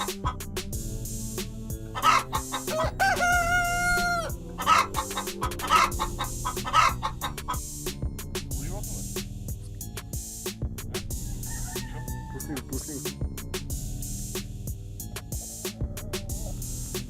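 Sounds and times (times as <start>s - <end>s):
chicken clucks: 0.0s - 0.4s, 2.0s - 7.6s, 15.4s - 16.6s
background music: 0.0s - 17.0s
rooster crowing: 1.9s - 7.2s, 11.1s - 12.6s.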